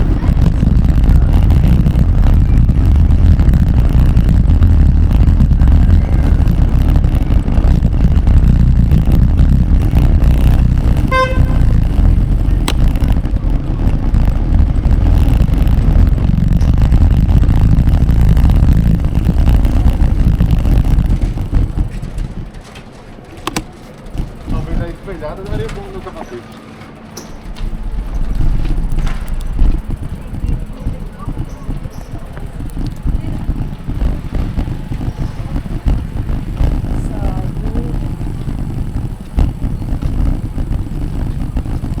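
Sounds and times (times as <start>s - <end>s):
loud low rumble: 0.0s - 22.6s, 27.4s - 42.0s
short beep or horn toot: 11.0s - 11.8s.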